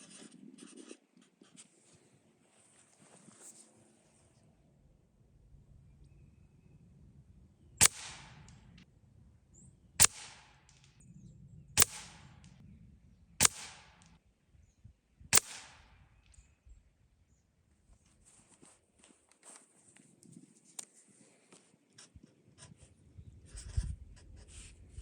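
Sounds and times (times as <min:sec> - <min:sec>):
air rifle shots: 0:07.8 - 0:08.8, 0:10.0 - 0:11.0, 0:11.8 - 0:12.6, 0:13.4 - 0:14.2, 0:15.3 - 0:16.3.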